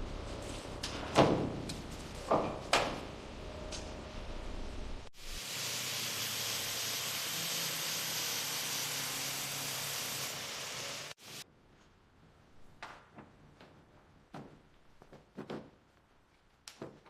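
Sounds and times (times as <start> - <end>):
steady hiss: 5.2 - 11.4.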